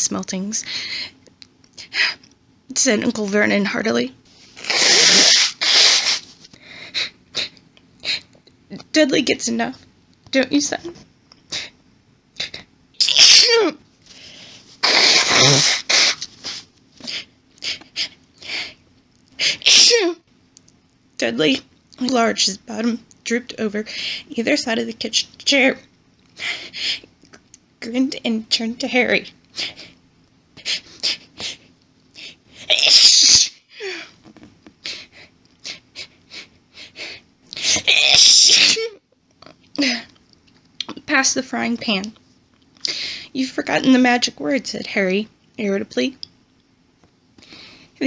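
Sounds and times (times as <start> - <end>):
woman sneezing: 4.6 - 6.2, 13.0 - 13.7, 14.8 - 16.2, 19.4 - 20.2, 32.6 - 33.7, 37.6 - 38.9
catches of breath: 47.4 - 48.0.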